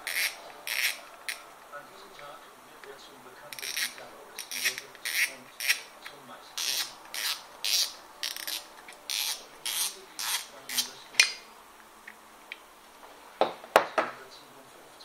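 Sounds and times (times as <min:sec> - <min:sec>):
hands rubbing rasping: 0:00.0 - 0:01.5, 0:03.5 - 0:05.9, 0:06.6 - 0:11.4.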